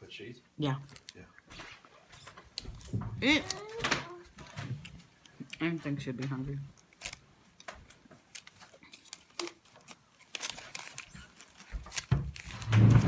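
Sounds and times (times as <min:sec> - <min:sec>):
person chewing food: 0:02.2 - 0:05.6, 0:06.6 - 0:12.6.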